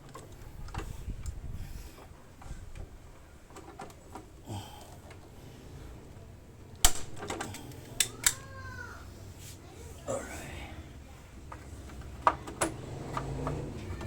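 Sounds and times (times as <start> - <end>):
plastic clip snapping: 6.8 - 8.4.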